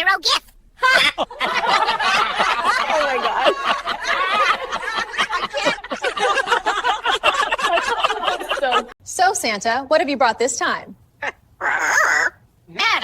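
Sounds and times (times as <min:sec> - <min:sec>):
people laughing: 0:00.8 - 0:09.0.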